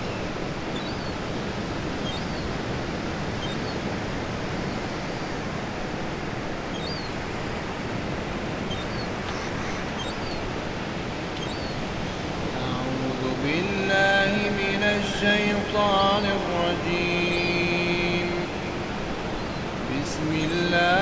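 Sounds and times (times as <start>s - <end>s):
faint high bird calls: 0.0s - 21.0s
ocean waves washing on shore: 0.0s - 21.0s.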